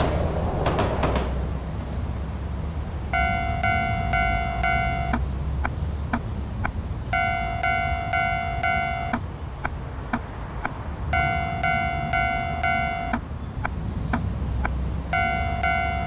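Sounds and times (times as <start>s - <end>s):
low rumble: 0.0s - 16.0s
level crossing alarm dinging: 3.1s - 5.2s, 7.1s - 9.2s, 11.1s - 13.2s, 15.1s - 16.0s.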